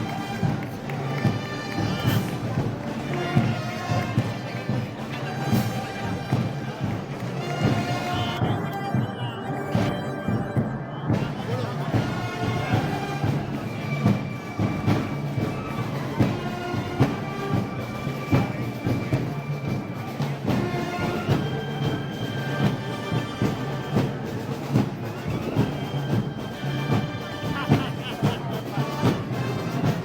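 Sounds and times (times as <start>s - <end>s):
festival band march: 0.0s - 30.0s.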